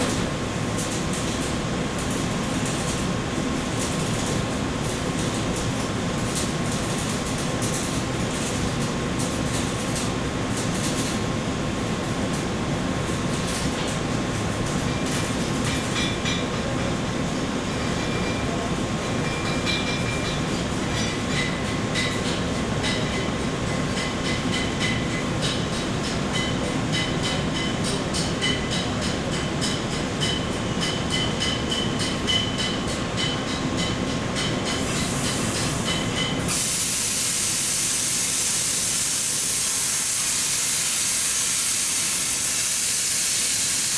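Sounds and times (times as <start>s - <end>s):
loud even hiss: 34.9s - 43.9s.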